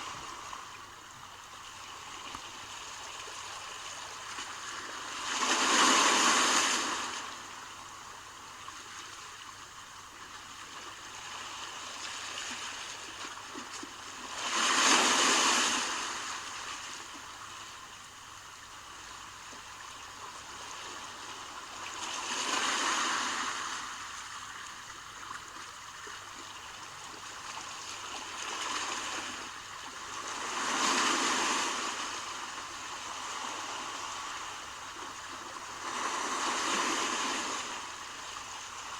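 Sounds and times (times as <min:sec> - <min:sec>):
sea waves breaking on shore: 0:02.0 - 0:07.7, 0:11.6 - 0:17.2, 0:20.7 - 0:24.6, 0:27.3 - 0:38.9.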